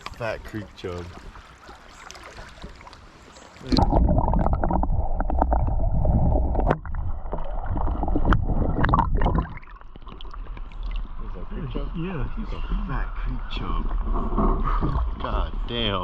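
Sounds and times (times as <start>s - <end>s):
muffled rumbling and gurgling: 3.6s - 16.0s.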